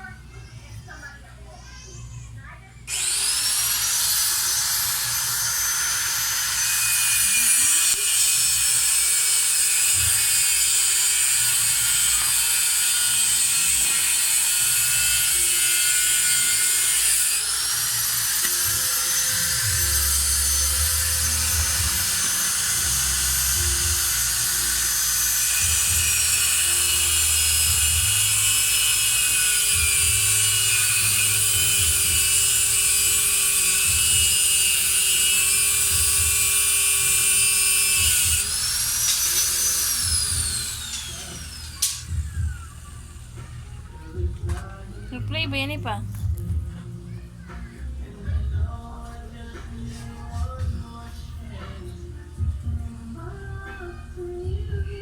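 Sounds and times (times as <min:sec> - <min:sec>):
power tool motor whining: 0:02.9 - 0:43.6.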